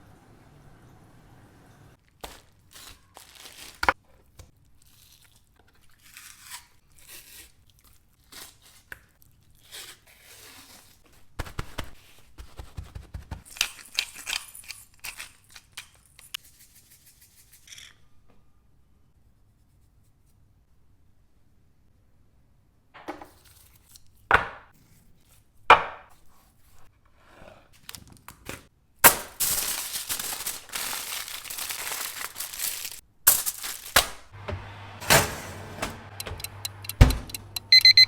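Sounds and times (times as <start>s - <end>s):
rustling or tearing: 2.0s - 12.7s, 27.8s - 34.3s.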